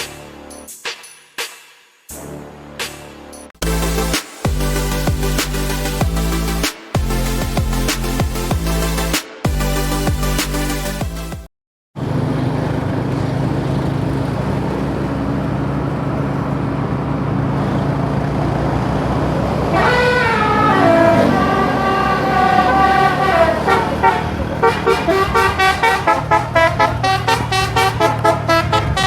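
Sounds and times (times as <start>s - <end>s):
road noise: 12.0s - 29.0s
vehicle engine drone: 12.0s - 29.0s
bus musical horn: 19.6s - 29.0s.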